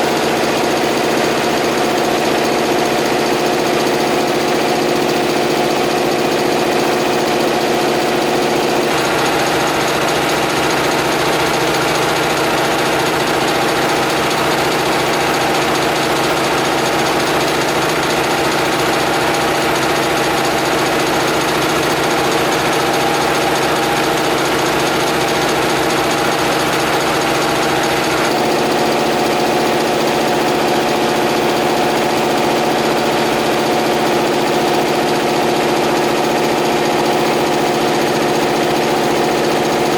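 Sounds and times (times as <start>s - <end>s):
air compressor pulsing: 0.0s - 39.9s.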